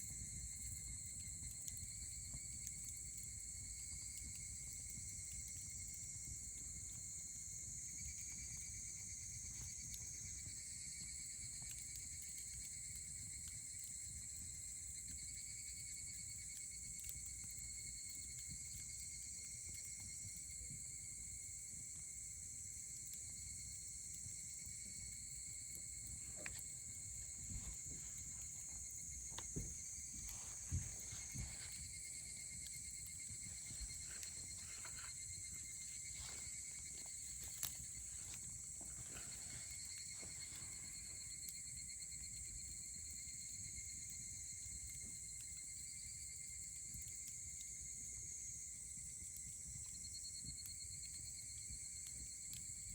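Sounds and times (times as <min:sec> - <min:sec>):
high insect trill: 0:00.0 - 0:52.9
wood fire crackling and popping: 0:00.0 - 0:52.9.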